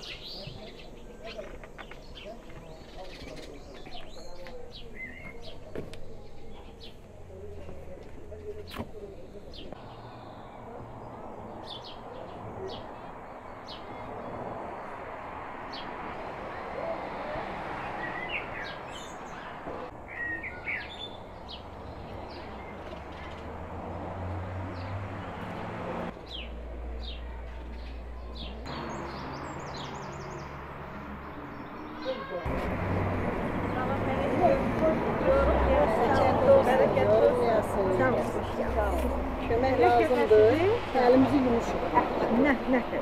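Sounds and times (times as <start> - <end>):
small birds chirping: 0.0 - 16.9, 17.7 - 32.8.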